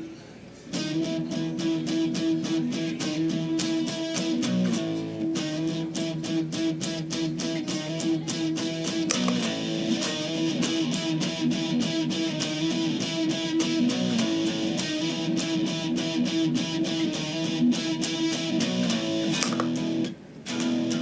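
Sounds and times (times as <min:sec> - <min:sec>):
overdriven electric guitar strumming: 0:00.7 - 0:21.0.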